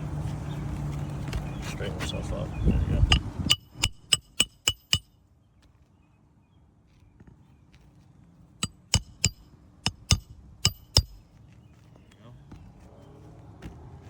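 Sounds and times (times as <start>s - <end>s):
hammer striking roofing nails: 3.1s - 5.1s, 8.6s - 11.2s.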